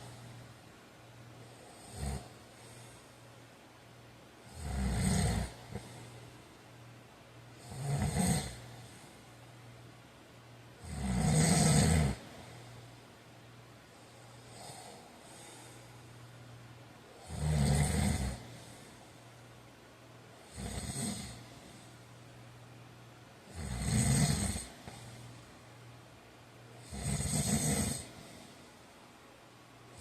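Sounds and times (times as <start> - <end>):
man snoring: 1.4 - 3.0, 4.5 - 6.2, 7.6 - 9.1, 10.8 - 13.0, 14.0 - 15.8, 17.1 - 19.0, 20.4 - 21.8, 23.4 - 25.2, 26.8 - 28.6
faint breath: 1.4 - 3.4, 12.2 - 17.3, 18.4 - 19.6, 28.0 - 29.1.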